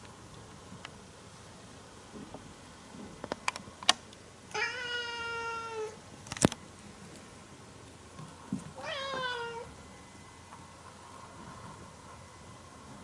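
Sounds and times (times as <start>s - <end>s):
cat meowing: 4.5s - 6.0s, 8.8s - 9.7s.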